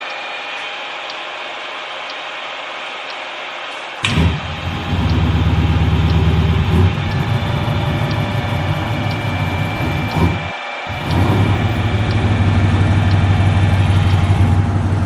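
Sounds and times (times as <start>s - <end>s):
car engine idling: 4.0s - 15.0s.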